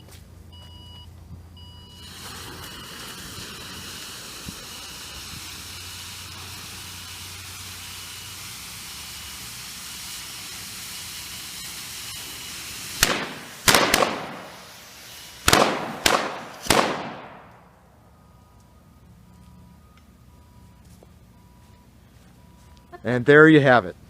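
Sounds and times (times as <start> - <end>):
steady hiss: 1.9 - 22.4
firecracker bangs: 2.0 - 7.9, 8.5 - 17.8.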